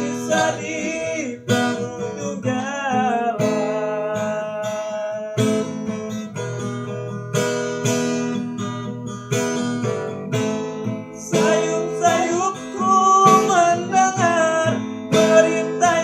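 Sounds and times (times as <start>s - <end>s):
acoustic guitar strumming: 0.0s - 16.0s.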